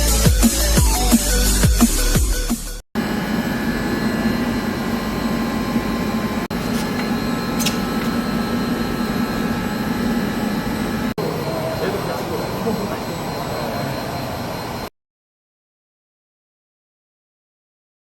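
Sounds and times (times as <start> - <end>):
electric water pump humming: 3.0 - 14.9.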